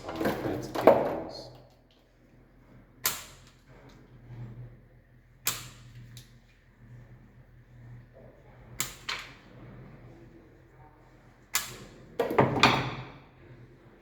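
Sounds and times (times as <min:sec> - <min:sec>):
metal and cable clattering: 0:00.0 - 0:02.1.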